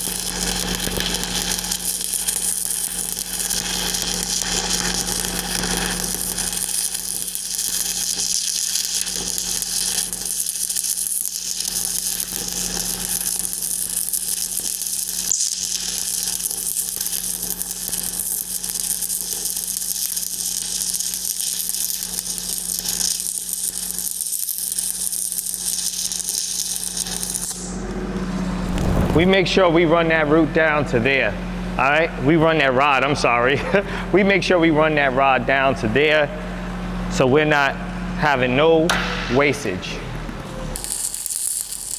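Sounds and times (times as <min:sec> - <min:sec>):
welding arc crackling and sizzling: 0:00.0 - 0:29.6, 0:38.3 - 0:41.9
steady low hum: 0:27.5 - 0:40.8.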